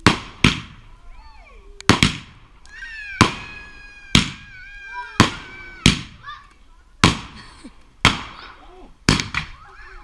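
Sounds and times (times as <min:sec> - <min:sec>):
firework bangs: 0:00.0 - 0:00.9, 0:01.9 - 0:06.2, 0:07.0 - 0:09.6.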